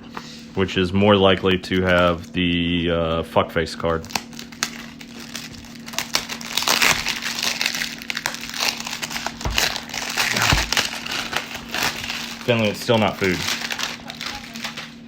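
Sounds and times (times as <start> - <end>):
plastic wrapping crinkling: 3.8 - 15.0.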